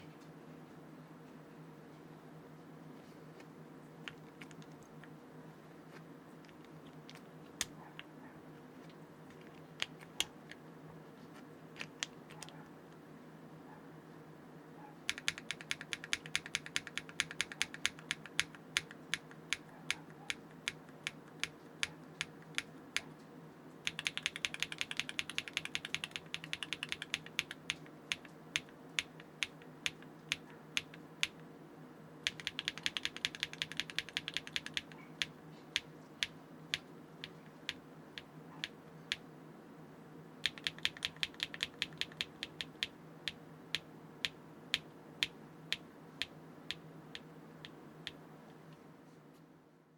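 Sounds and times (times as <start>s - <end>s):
faint steady hum: 0.0s - 49.9s
typing on mechanical keyboard: 4.1s - 4.8s, 15.1s - 23.1s, 23.9s - 31.4s, 32.2s - 38.3s, 40.4s - 42.9s.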